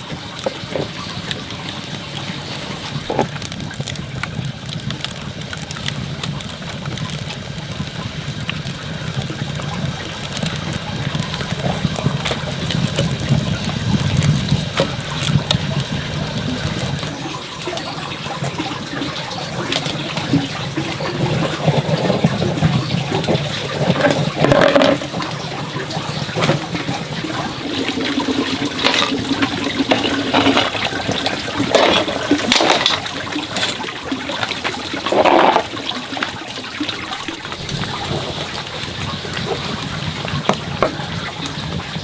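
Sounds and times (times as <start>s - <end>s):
water running and splashing: 0.0s - 42.0s
knocks and clatters: 23.2s - 25.3s, 28.7s - 33.9s.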